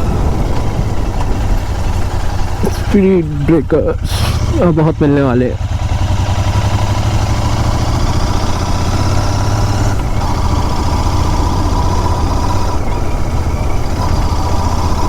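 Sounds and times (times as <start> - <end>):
wind noise: 0.0 - 5.0
motorcycle engine running: 0.0 - 15.0
road noise: 0.0 - 15.0.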